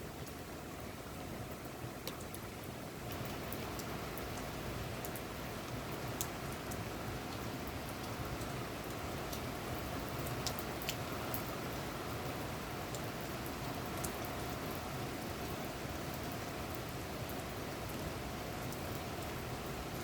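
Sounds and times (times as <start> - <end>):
steady rainfall: 0.0 - 20.0
raindrops ticking: 2.0 - 2.4, 3.0 - 11.5.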